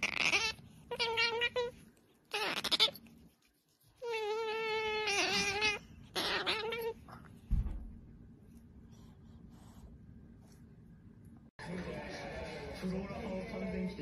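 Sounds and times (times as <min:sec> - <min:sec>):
low thump: 0:07.5 - 0:08.2.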